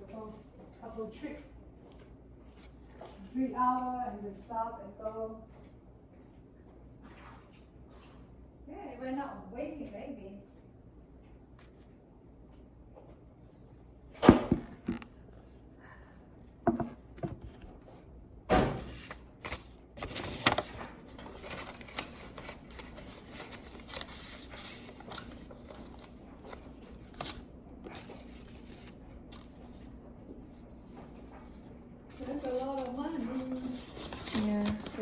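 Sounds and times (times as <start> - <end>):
paper or plastic rustling: 18.7 - 29.9, 30.5 - 35.0.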